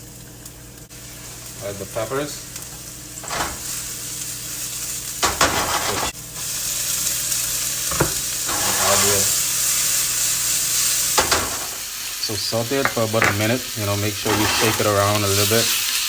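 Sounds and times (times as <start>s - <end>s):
vegetables sizzling in oil: 0.0s - 16.0s
stirring clatter in pan: 5.2s - 6.2s, 7.9s - 9.4s, 14.2s - 15.5s.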